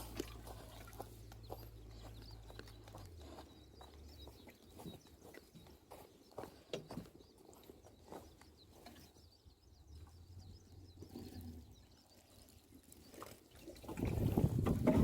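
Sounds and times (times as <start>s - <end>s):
faint bird chirping: 0.0s - 15.0s.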